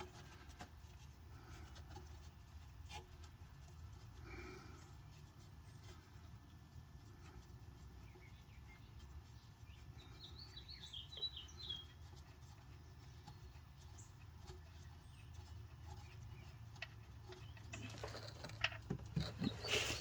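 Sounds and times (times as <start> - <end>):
faint bird chirps: 7.9 - 12.4.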